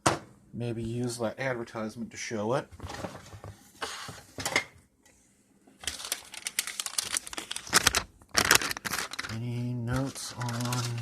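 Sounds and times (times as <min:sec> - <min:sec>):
newspaper rustling and crinkling: 0:05.8 - 0:11.0.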